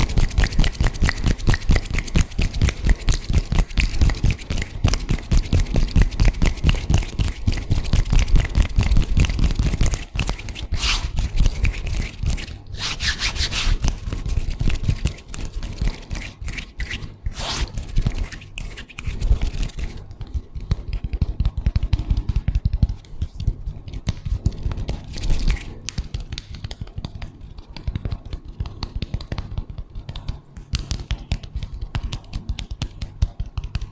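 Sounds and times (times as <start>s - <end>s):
hands rubbing together: 9.8s - 19.9s.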